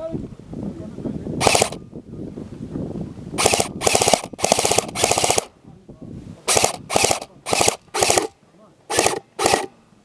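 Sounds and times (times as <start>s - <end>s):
airsoft rifle bursts: 1.4s - 1.8s, 3.4s - 5.5s, 6.5s - 8.3s, 8.9s - 9.7s.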